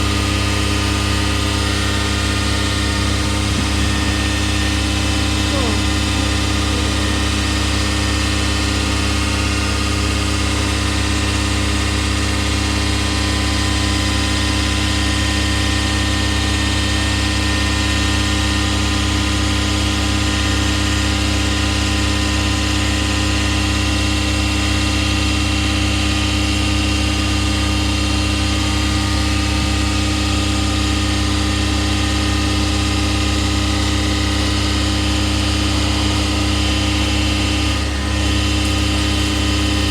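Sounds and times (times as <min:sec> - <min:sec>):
jet engines humming and whining: 0:00.0 - 0:10.0.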